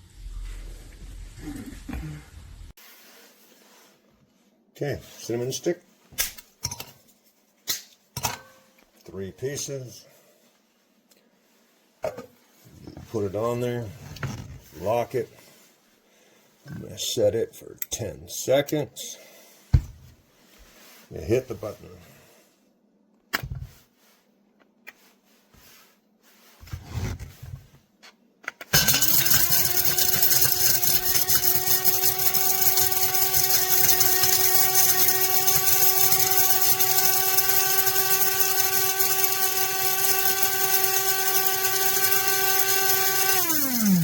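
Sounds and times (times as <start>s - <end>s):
spice grinder motor grinding: 28.7s - 44.0s.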